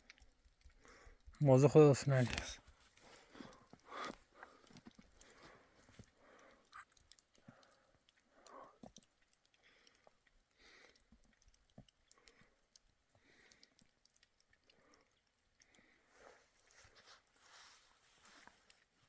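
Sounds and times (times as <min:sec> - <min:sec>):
faint clicks: 0:00.0 - 0:01.4, 0:02.1 - 0:17.5
soft rustles: 0:16.1 - 0:19.0.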